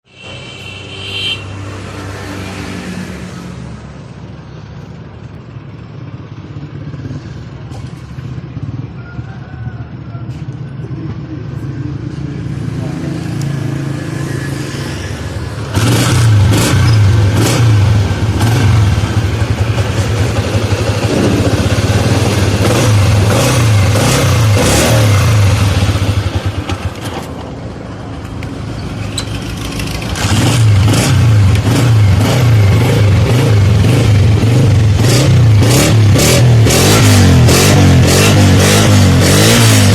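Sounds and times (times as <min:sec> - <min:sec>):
motorcycle engine running: 0:15.4 - 0:39.9.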